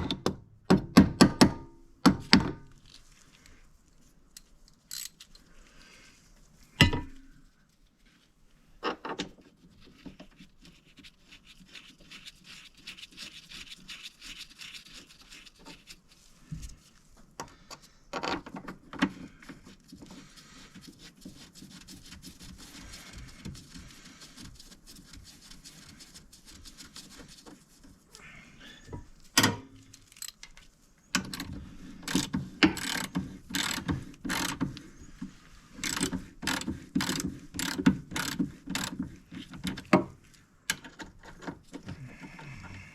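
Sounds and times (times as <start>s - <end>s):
metal clicking and scraping: 4.3s - 5.5s, 29.0s - 34.8s, 35.7s - 42.0s.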